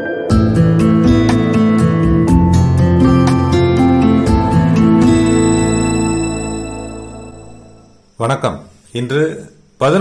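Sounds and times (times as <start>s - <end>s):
acoustic guitar plucking and strumming: 0.3s - 8.1s.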